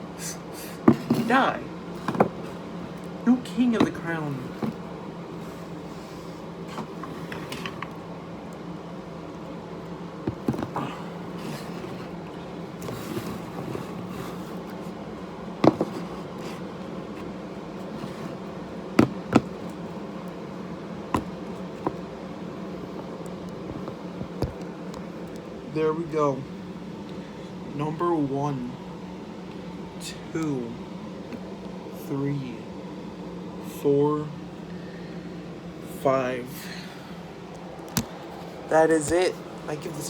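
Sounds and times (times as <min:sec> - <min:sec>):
fan humming: 0:00.0 - 0:40.0
objects knocked and set down: 0:02.0 - 0:02.4, 0:10.3 - 0:10.9, 0:15.6 - 0:16.1, 0:19.0 - 0:19.6.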